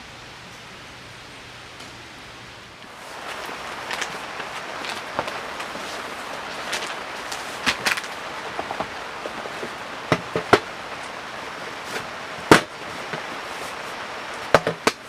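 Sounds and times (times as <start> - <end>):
steady rain: 0.0 - 15.0.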